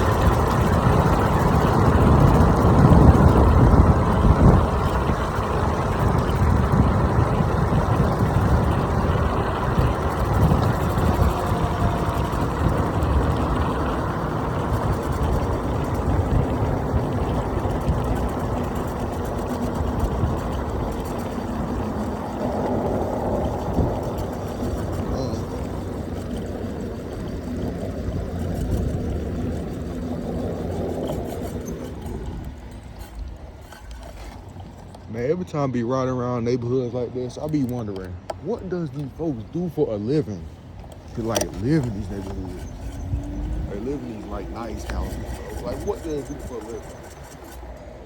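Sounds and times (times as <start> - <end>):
tyres rumbling on road: 0.0 - 48.0
wind buffeting microphone: 0.0 - 48.0.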